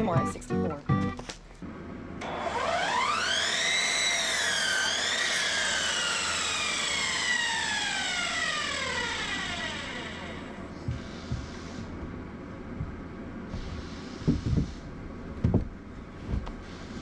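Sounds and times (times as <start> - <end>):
power saw motor whining: 2.2 - 11.9.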